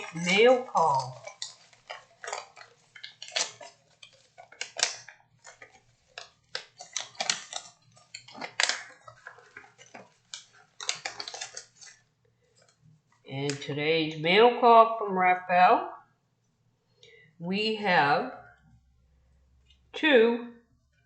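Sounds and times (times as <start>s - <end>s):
envelope paper tearing and rustling: 0.0s - 12.1s.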